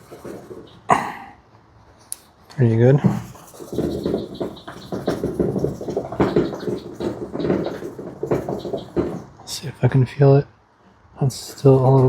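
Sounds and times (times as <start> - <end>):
scraping on metal roof panel: 0.0 - 1.0, 3.0 - 9.7.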